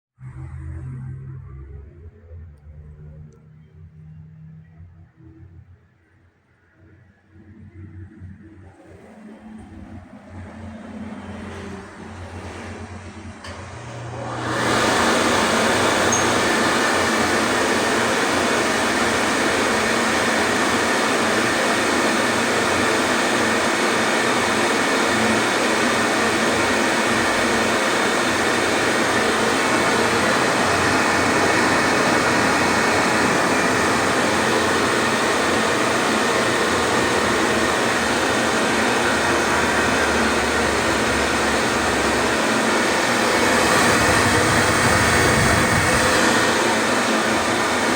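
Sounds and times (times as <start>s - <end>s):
low motor hum: 0.2s - 5.8s
hand dryer fan blowing air: 7.4s - 47.9s.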